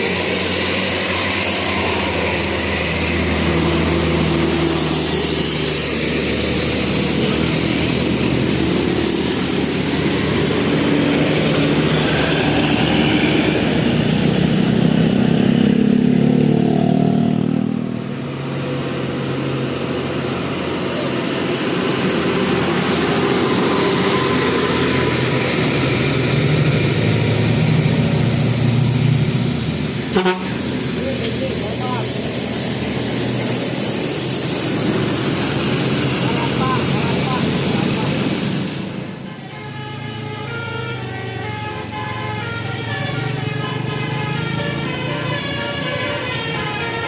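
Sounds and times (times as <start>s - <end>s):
bus engine: 0.0s - 47.0s
road traffic: 0.0s - 47.0s
vehicle passing: 0.0s - 47.0s.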